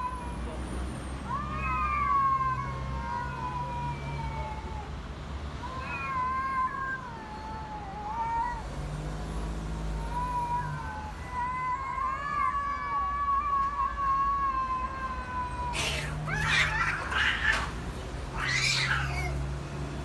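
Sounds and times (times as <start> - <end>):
cat yowling: 10.2 - 19.5.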